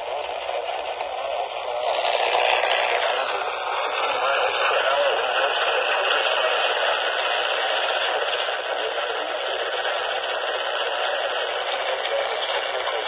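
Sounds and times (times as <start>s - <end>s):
radio static hiss: 2.9s - 13.0s.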